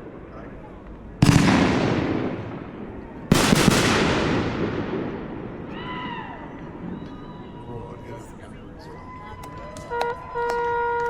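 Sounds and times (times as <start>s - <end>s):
fireworks cracks: 1.2s - 6.2s
fireworks booming: 1.2s - 7.4s.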